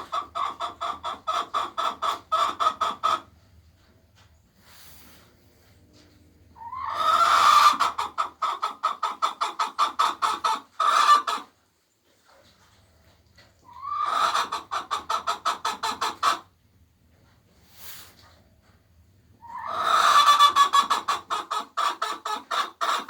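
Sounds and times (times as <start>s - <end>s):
hen cackling: 0.0s - 3.3s, 6.6s - 11.5s, 13.6s - 16.4s, 19.4s - 23.0s.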